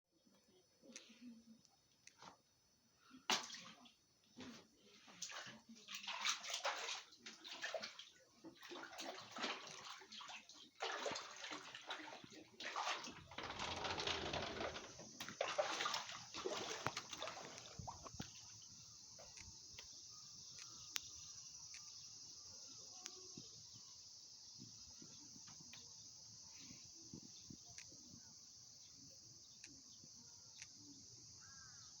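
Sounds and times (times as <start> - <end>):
floodwater sloshing and splashing: 3.3 - 19.4
steady high hiss with ticks: 16.9 - 32.0.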